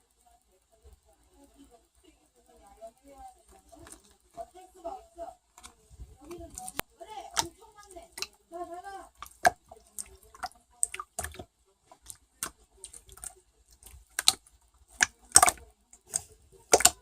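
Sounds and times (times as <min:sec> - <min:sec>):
sharp clicks and taps: 0:09.1 - 0:17.0.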